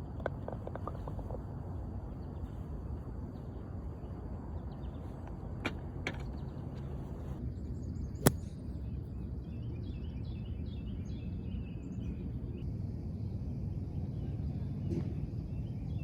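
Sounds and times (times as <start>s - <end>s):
low outdoor background noise: 0.0s - 16.0s
golf club striking ball: 8.2s - 8.5s.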